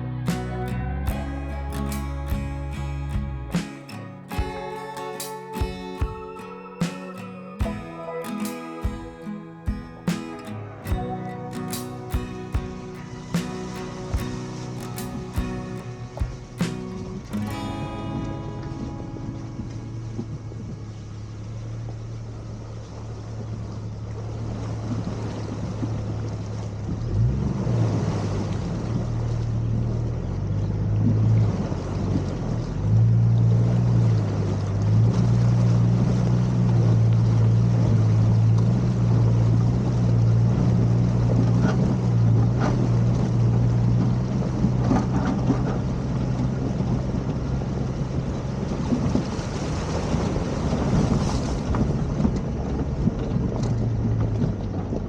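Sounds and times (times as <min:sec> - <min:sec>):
car engine running: 0:00.0 - 0:04.7
road and wind noise: 0:00.0 - 0:55.0.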